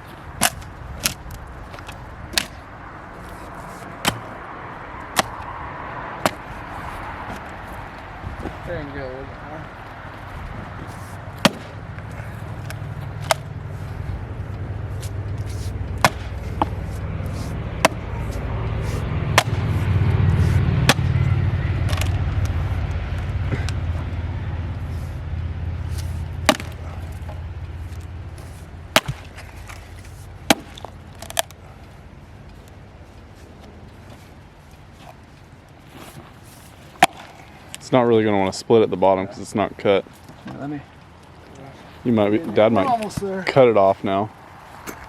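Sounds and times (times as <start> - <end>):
excavator diesel engine under load: 9.9 - 32.2.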